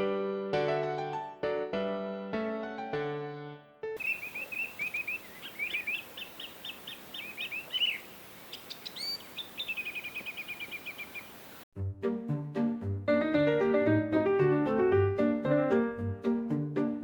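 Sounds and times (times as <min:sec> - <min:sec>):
faint outdoor hiss: 0:04.0 - 0:11.6
songbird singing: 0:04.0 - 0:11.6.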